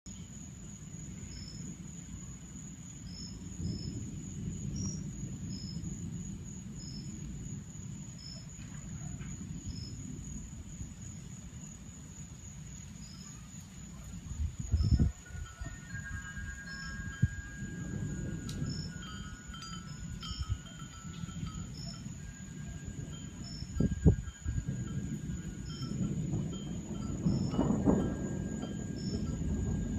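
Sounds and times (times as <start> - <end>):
insects chirping: 0.1 - 29.9
high-pitched insect drone: 14.8 - 29.9.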